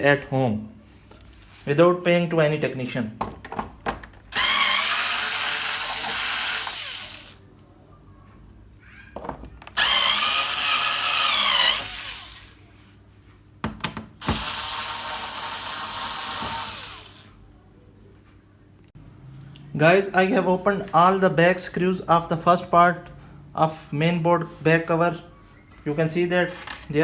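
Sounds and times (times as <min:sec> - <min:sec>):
cordless screwdriver whirring: 0:04.3 - 0:07.4, 0:09.8 - 0:12.6, 0:14.2 - 0:17.3.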